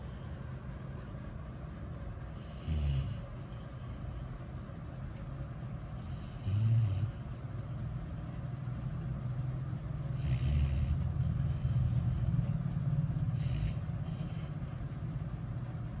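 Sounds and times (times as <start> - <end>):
dog snoring: 2.3 - 4.3, 5.9 - 7.8, 10.1 - 14.6.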